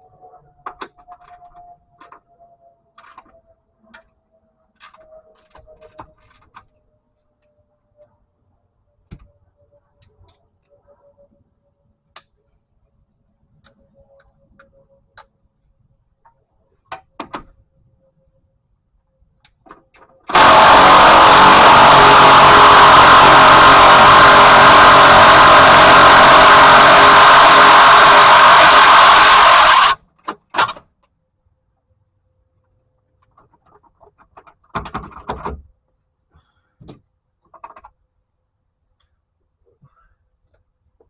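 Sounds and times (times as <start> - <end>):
loud machine motor running: 20.3 - 30.0.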